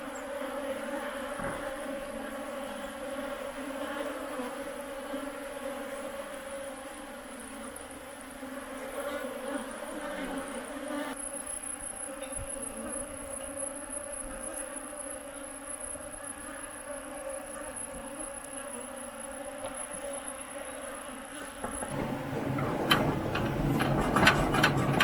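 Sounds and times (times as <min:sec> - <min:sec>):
honeybees buzzing: 0:16.5 - 0:25.0.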